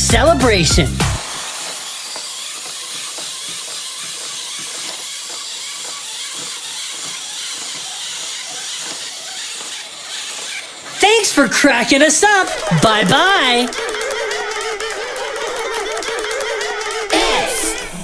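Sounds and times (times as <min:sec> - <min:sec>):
steady hissing noise: 0:01.2 - 0:03.8.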